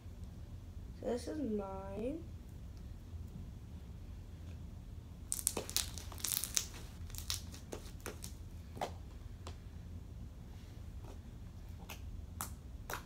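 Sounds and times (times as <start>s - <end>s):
sharp crackles: 5.3s - 8.4s
crinkling handling noise: 5.3s - 9.1s.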